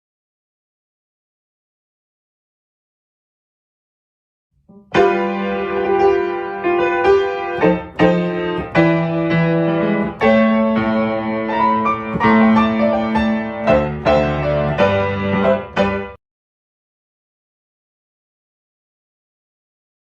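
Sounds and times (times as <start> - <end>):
piano chords: 4.7 - 16.2.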